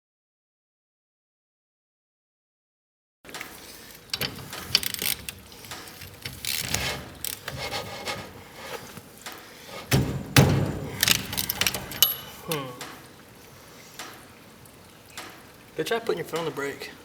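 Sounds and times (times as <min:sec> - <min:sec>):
hand ratchet clicking: 0:04.1 - 0:08.2
loud clunk: 0:09.7 - 0:12.4.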